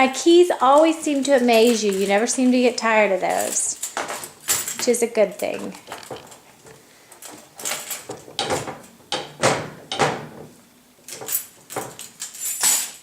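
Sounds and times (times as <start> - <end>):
dishwasher rack rattling on rails: 7.2 - 10.5.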